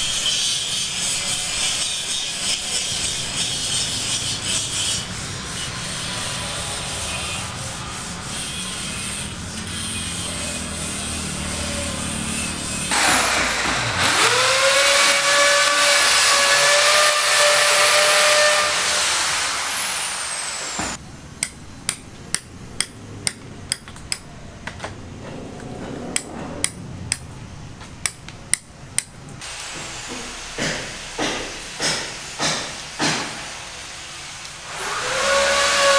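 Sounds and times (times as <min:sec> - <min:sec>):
power tool whining: 0:10.3 - 0:21.0, 0:34.7 - 0:35.9
sharp hammering strikes: 0:12.9 - 0:19.2, 0:20.7 - 0:24.3, 0:26.2 - 0:27.3, 0:29.8 - 0:33.6.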